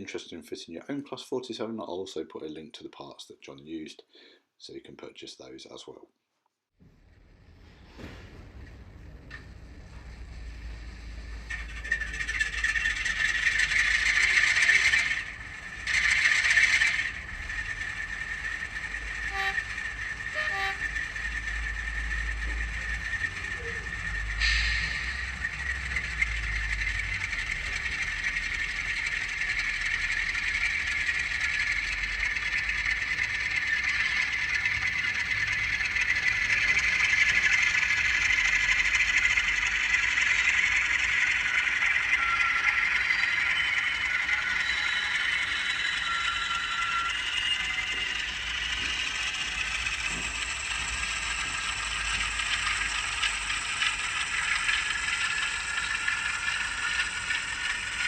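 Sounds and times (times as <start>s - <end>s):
model train wheels clattering: 7.8s - 58.0s
diesel engine through small speaker: 9.9s - 42.4s.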